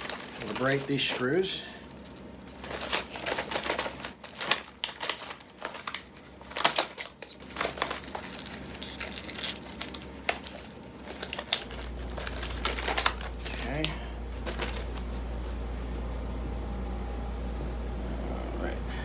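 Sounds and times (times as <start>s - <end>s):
plastic packaging crinkling and tearing: 0.0s - 15.0s
metal screws clinking: 1.8s - 13.9s.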